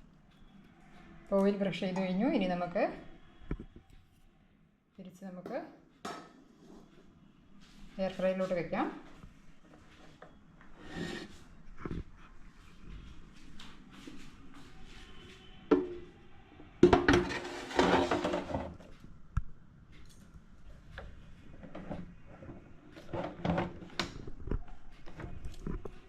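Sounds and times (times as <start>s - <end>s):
basket scraping clatter: 17.1s - 18.8s.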